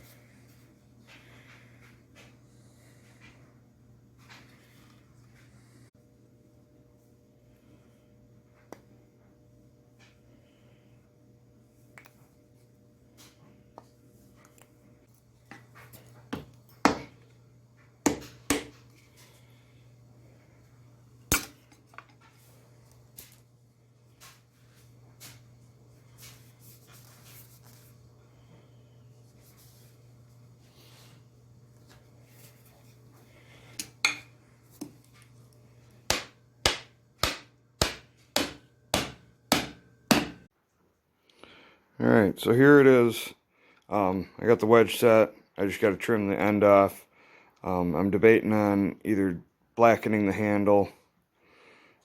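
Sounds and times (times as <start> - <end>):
hammer knocking wedge: 16.3 - 17.1, 18.1 - 18.8, 36.1 - 40.4.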